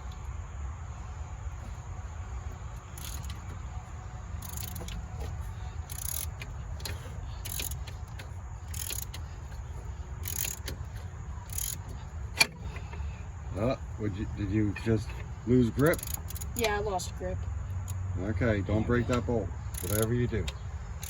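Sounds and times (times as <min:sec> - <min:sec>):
tool slipping clack: 0:02.8 - 0:03.6, 0:04.4 - 0:13.1, 0:14.5 - 0:16.8, 0:19.1 - 0:21.0
socket ratchet clicking: 0:02.9 - 0:03.5, 0:04.4 - 0:09.6, 0:10.2 - 0:12.9, 0:15.8 - 0:16.7, 0:19.1 - 0:21.0.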